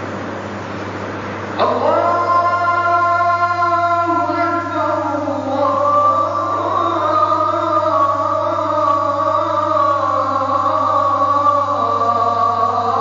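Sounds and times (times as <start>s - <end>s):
steady low hum: 0.0s - 13.0s
man chanting: 1.6s - 13.0s.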